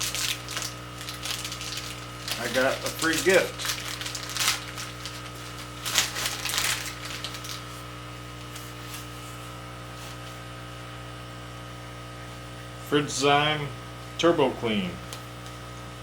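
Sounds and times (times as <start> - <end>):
packaging rustling and clicking: 0.0 - 7.7
steady electrical hum: 0.0 - 16.0.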